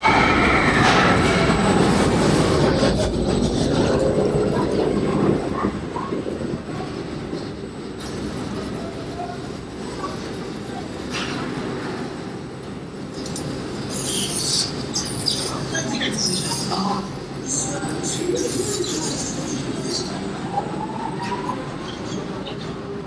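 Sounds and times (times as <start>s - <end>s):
roller coaster rumbling on track: 0.0s - 23.0s.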